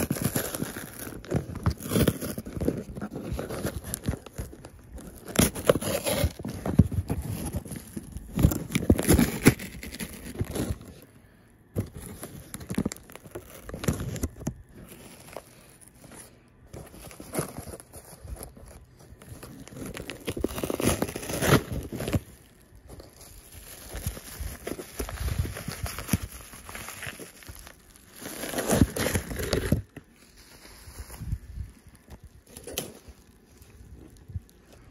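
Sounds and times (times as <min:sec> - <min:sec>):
packaging crinkling and tearing: 0:00.0 - 0:34.9.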